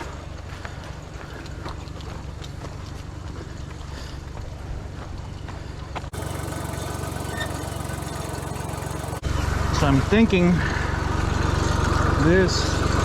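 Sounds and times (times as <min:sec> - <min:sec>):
engine idling: 0:06.0 - 0:13.0.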